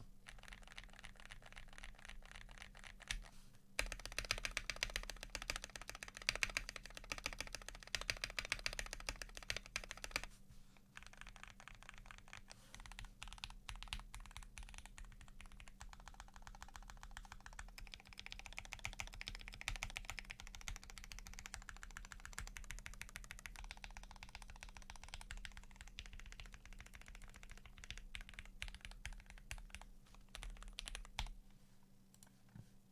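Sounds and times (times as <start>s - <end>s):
fast typing on mechanical keyboard: 0.2s - 10.3s, 11.0s - 31.3s.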